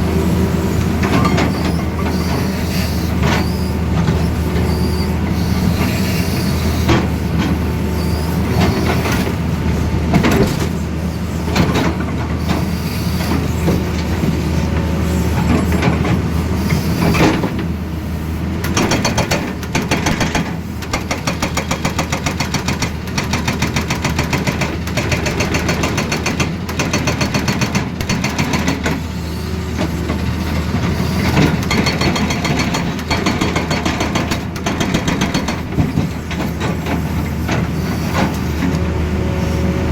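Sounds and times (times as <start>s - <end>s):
excavator diesel engine under load: 0.0s - 39.9s
hydraulic breaker hammering: 18.7s - 28.9s.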